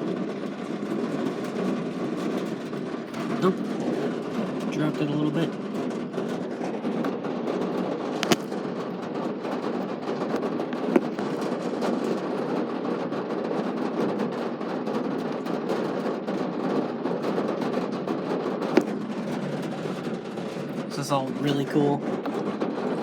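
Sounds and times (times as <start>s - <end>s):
rain falling steadily: 0.0s - 23.0s
sharp taps: 8.2s - 8.6s, 10.3s - 11.4s, 18.8s - 19.0s.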